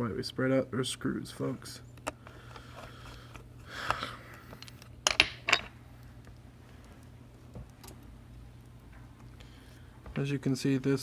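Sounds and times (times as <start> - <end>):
faint electrical hum: 0.0 - 11.0
metal tool clinking on bench: 5.1 - 5.7.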